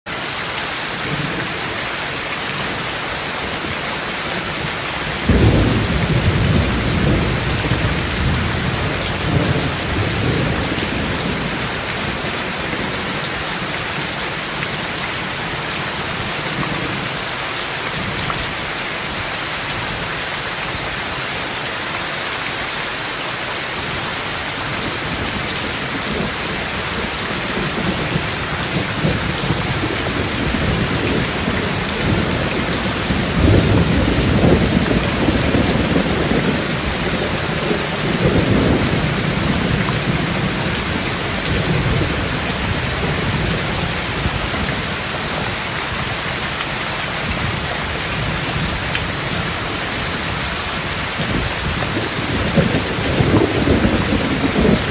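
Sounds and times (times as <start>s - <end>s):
heavy rain hissing: 0.1s - 54.9s
thunder rumbling: 5.1s - 13.7s, 24.7s - 45.5s, 47.2s - 54.9s.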